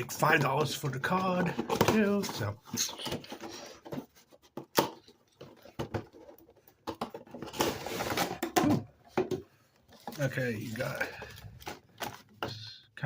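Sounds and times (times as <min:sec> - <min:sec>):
cardboard and plastic rustling: 0:00.0 - 0:12.6
clicks and taps on toy packaging: 0:00.1 - 0:07.5.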